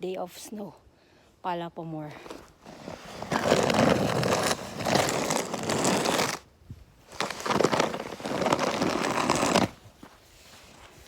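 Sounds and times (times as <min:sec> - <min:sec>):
snow shovel scraping snow: 0:02.3 - 0:06.5, 0:07.1 - 0:11.0.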